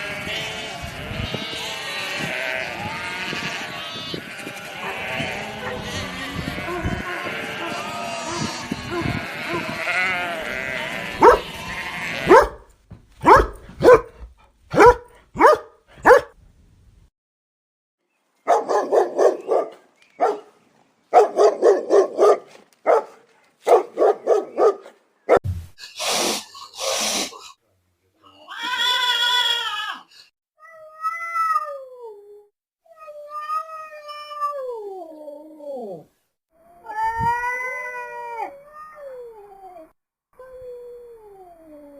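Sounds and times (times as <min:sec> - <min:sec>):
cat meowing: 0:01.2 - 0:12.4
short sharp barks: 0:11.2 - 0:11.5, 0:12.3 - 0:16.3, 0:21.2 - 0:25.6.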